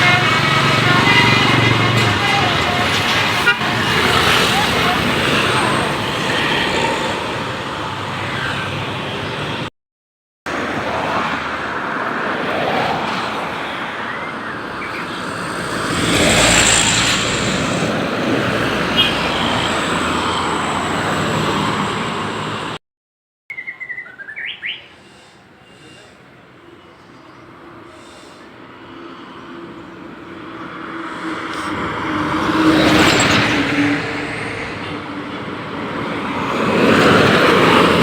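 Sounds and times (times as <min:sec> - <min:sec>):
vehicle passing: 0:00.0 - 0:09.6, 0:14.6 - 0:22.8, 0:35.7 - 0:38.0
road traffic rushing past: 0:00.0 - 0:09.7, 0:10.5 - 0:22.8, 0:23.5 - 0:38.0.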